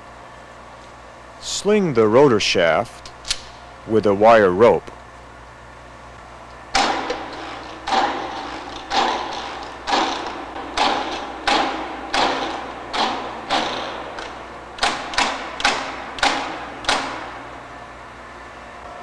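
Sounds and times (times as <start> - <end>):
sharp ringing metal knocks: 6.8 - 17.4.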